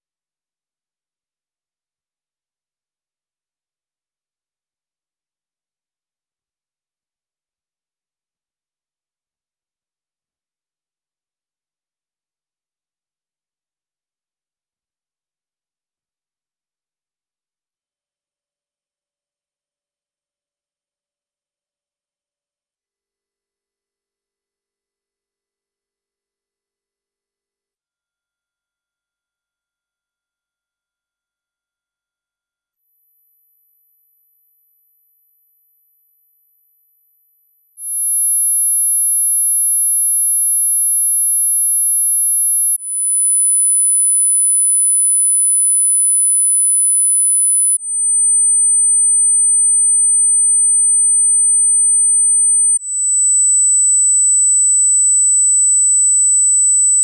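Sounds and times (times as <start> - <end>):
high-pitched pure tone: 19.8 - 34.0.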